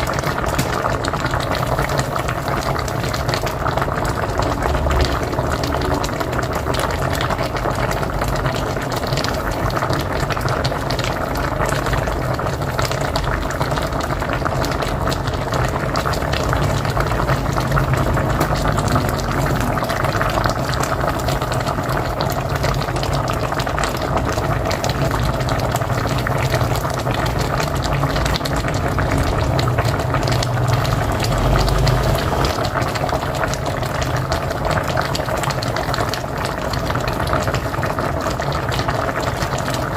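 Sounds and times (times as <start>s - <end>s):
pot boiling hard: 0.0s - 39.9s.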